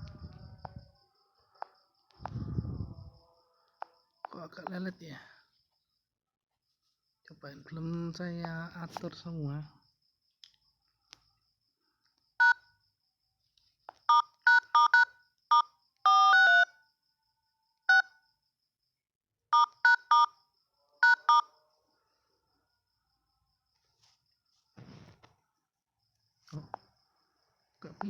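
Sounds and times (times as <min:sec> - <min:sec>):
phone keypad dialing tones: 0:14.0 - 0:16.7, 0:19.6 - 0:20.3.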